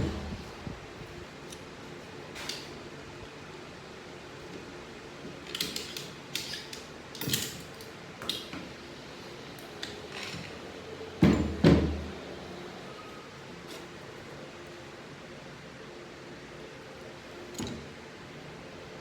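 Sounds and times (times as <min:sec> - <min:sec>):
fan hum: 0:00.0 - 0:19.0
metal parts clinking and rattling: 0:05.4 - 0:07.9, 0:17.5 - 0:18.0.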